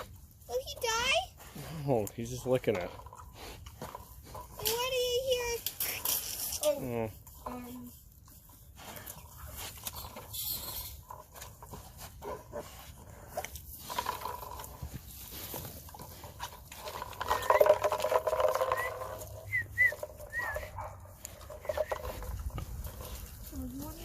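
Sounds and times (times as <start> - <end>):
plastic toy clattering and rattling: 16.8 - 20.4.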